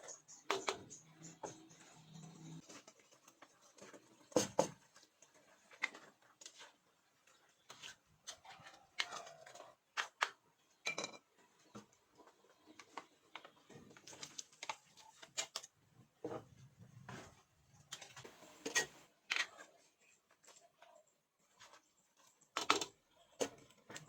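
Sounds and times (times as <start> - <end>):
utensils clinking against cookware: 10.8 - 11.3.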